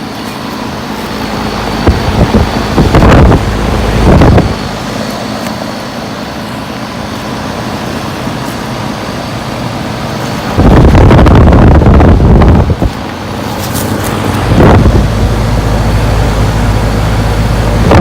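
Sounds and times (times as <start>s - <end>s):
air conditioner unit humming: 0.0s - 18.0s
wind buffeting microphone: 1.1s - 5.1s, 10.4s - 18.0s.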